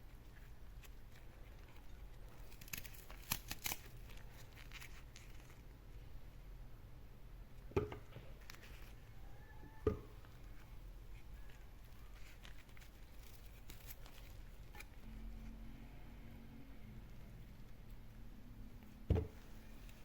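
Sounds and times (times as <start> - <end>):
light clicks and crinkles: 0.0 - 5.7, 8.2 - 9.2, 9.8 - 15.6
hard object knocking: 7.7 - 8.2, 9.8 - 10.2, 19.1 - 19.4.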